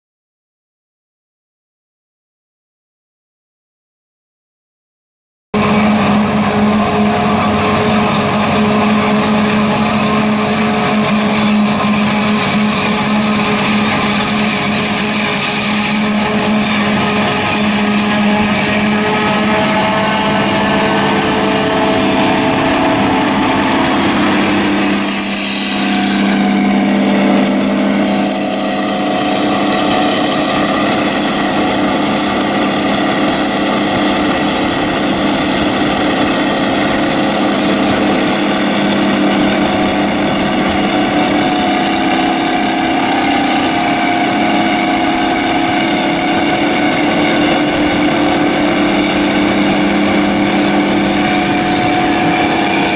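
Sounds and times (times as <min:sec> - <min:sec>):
tractor diesel engines running: 0:05.6 - 0:52.9.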